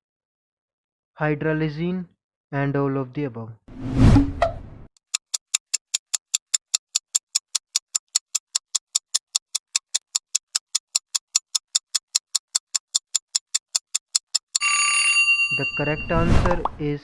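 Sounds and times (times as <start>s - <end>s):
fast clock ticks: 5.0s - 14.6s.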